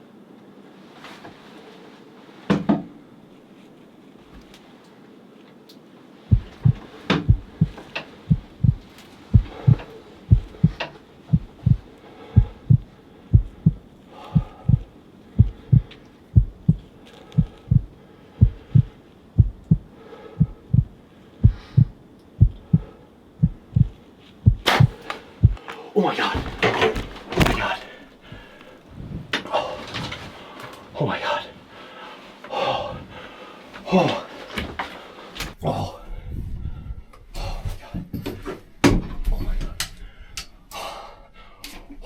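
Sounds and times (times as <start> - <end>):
deep heartbeat-like thumps: 6.3 - 25.6.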